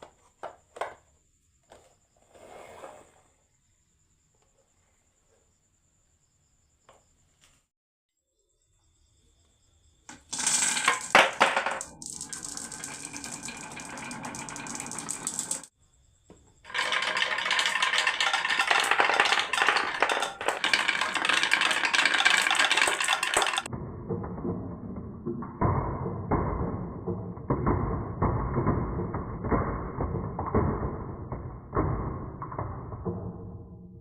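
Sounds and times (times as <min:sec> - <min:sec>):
marbles rattling down wooden run: 0:10.1 - 0:15.7, 0:16.7 - 0:33.7.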